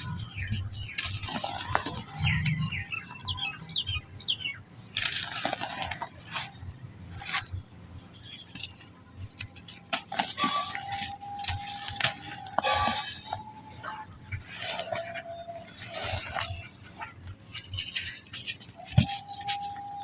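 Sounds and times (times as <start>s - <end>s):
bird chirps: 0.0s - 4.7s
sand crunching and crumbling: 4.7s - 20.0s.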